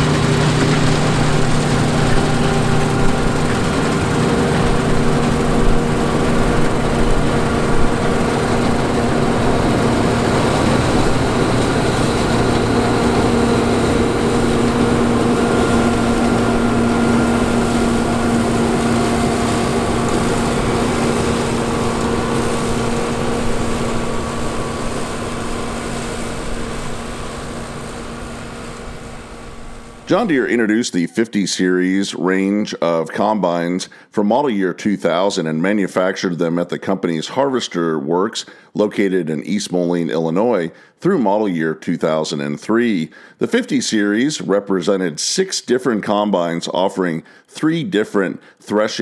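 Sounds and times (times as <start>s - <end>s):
threshing machinery rattle: 0.0s - 30.1s
diesel engine under load: 0.0s - 30.4s.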